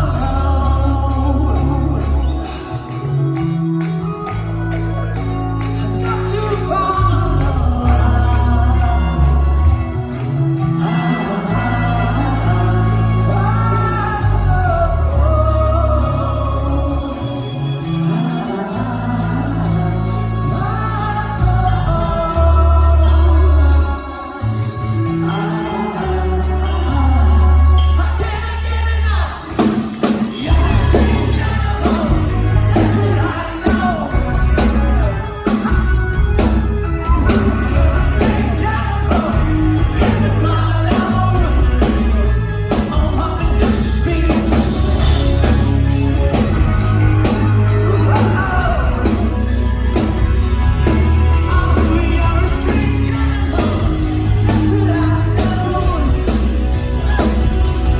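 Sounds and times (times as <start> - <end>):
live rock band playing: 0.0 - 57.9
person singing: 0.0 - 57.9
steady drum beat: 29.4 - 57.9.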